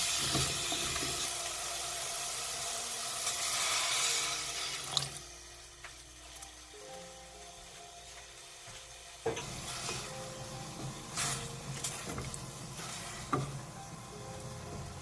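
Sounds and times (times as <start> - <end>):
food sizzling in a hot pan: 0.0 - 15.0
utensil scraping a pan: 11.1 - 13.6.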